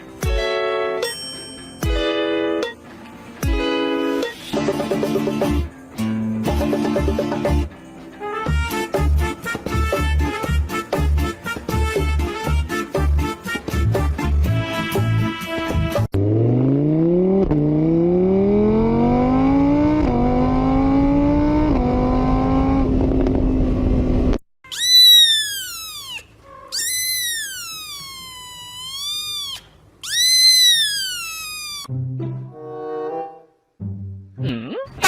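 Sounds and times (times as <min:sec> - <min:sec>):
vehicle engine accelerating: 0:16.1 - 0:24.4
high-pitched rising and falling cries: 0:24.7 - 0:31.9.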